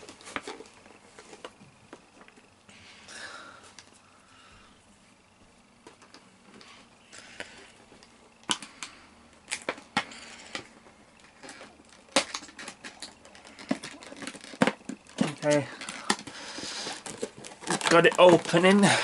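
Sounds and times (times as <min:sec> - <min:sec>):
packaging rustling: 0:06.0 - 0:19.0
plastic packaging snapping: 0:08.4 - 0:10.7, 0:11.4 - 0:18.8.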